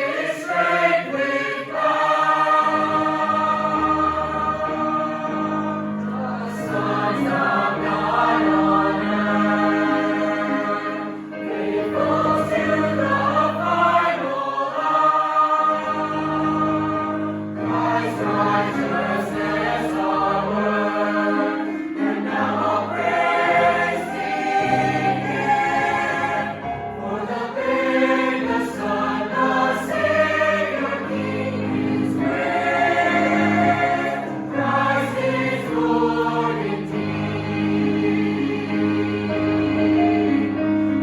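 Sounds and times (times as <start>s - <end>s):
choir singing a hymn: 0.0s - 41.0s.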